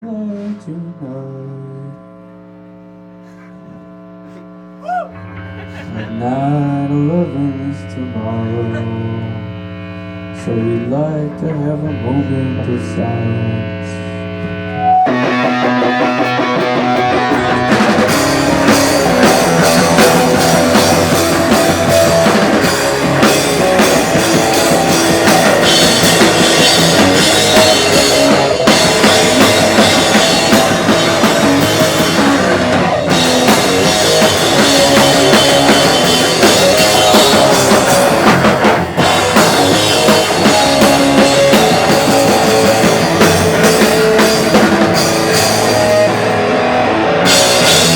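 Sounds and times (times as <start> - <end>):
electric guitar: 0.0 - 47.9
drum kit with cymbals: 15.1 - 47.9.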